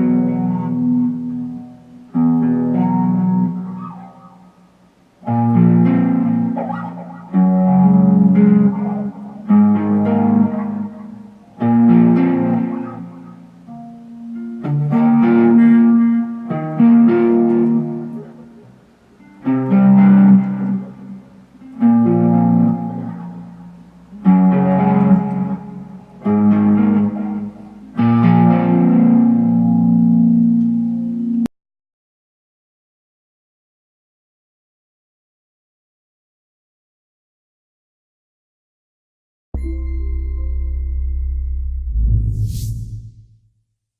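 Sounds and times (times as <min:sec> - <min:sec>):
ambient guitar chords with delay: 0:00.0 - 0:31.5, 0:39.6 - 0:42.2.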